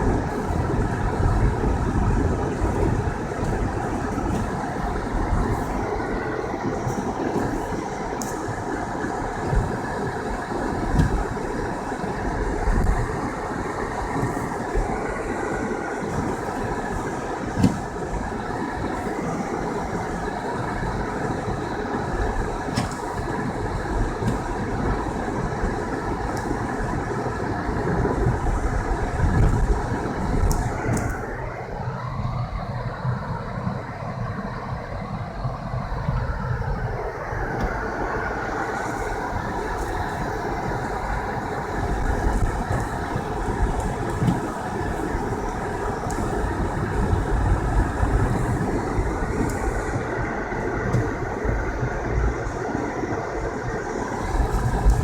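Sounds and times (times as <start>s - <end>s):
car engine and tyre noise: 0.0s - 55.0s
sharp knocks and thumps: 1.4s - 8.6s, 9.4s - 13.1s, 15.9s - 19.5s, 22.6s - 26.8s, 28.2s - 31.3s, 42.0s - 47.3s.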